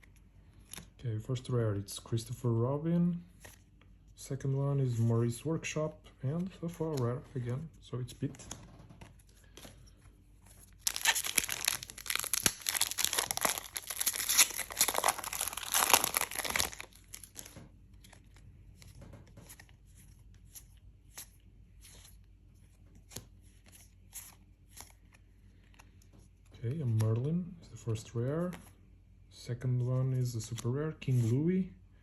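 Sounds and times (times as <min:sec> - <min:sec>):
wrapper tearing and crinkling: 0:10.8 - 0:17.5.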